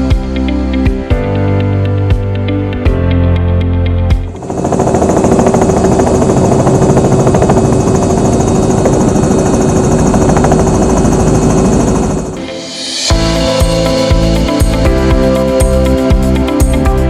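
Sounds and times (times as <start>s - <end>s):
steady turbine tone: 3.7s - 17.0s
helicopter rotor chop: 4.1s - 16.9s.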